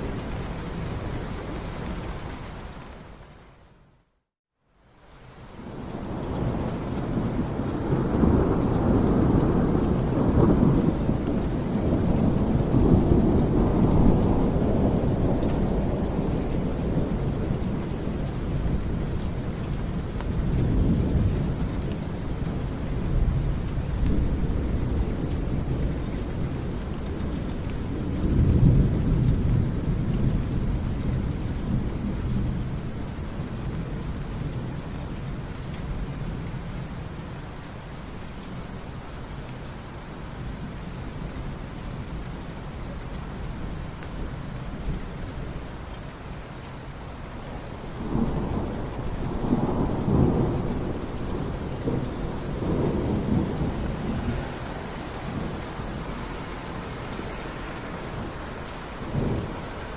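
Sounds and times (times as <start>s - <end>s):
steady rain: 0.0s - 59.9s
rolling thunder: 5.7s - 22.1s, 47.9s - 59.9s.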